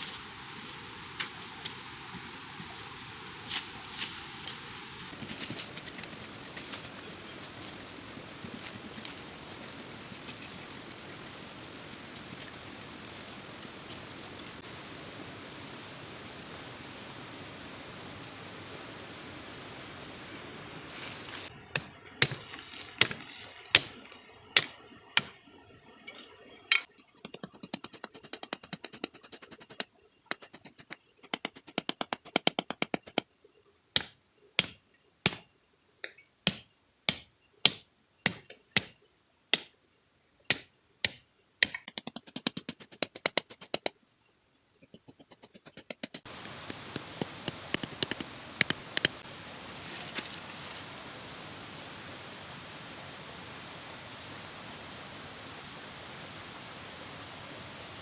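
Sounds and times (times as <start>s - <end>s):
faint hiss: 0.0s - 26.8s, 46.0s - 58.0s.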